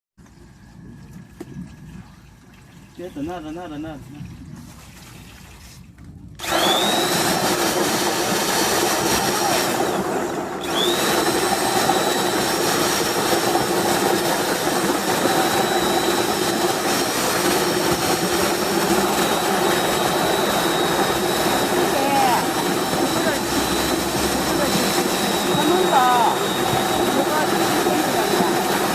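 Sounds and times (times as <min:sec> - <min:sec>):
washing machine whining: 0:00.2 - 0:28.9.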